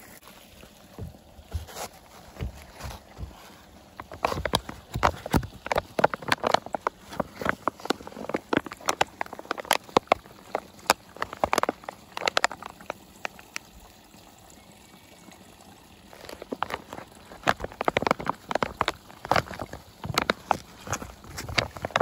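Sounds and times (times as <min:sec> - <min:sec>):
water trickling into bottle: 0:00.0 - 0:22.0
plastic bag clicks and crinkles: 0:04.0 - 0:13.6, 0:16.1 - 0:22.0.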